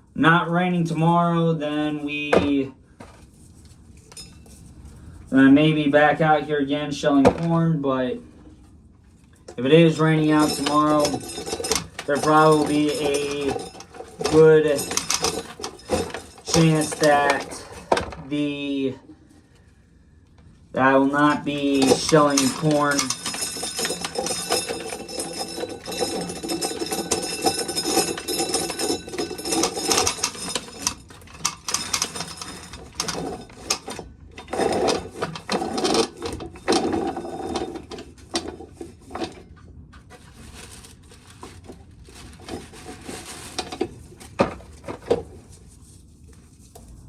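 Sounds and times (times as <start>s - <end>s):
corn kernels and cobs rattling: 9.5s - 18.2s, 20.8s - 39.4s, 40.1s - 45.6s.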